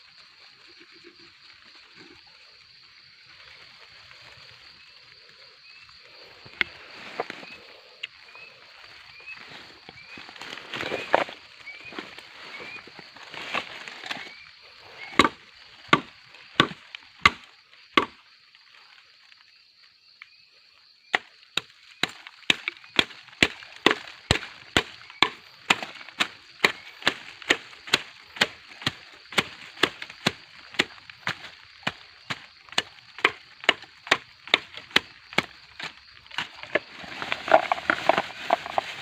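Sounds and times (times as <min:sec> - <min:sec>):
blade chopping into bamboo: 0:15.1 - 0:18.2, 0:21.2 - 0:36.8.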